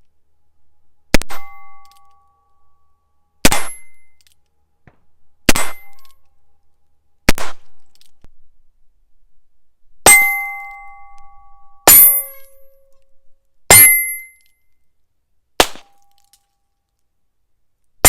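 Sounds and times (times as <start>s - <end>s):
metallic ring: 1.3s - 4.3s, 5.6s - 6.2s, 10.0s - 14.8s.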